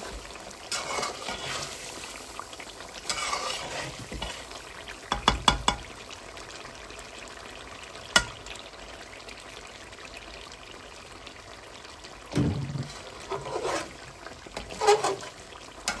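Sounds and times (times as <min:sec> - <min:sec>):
scraping and stirring: 0:00.0 - 0:05.8, 0:12.6 - 0:16.0
faint sizzling: 0:00.0 - 0:09.1, 0:11.8 - 0:16.0
utensil clinking on cookware: 0:05.1 - 0:05.9.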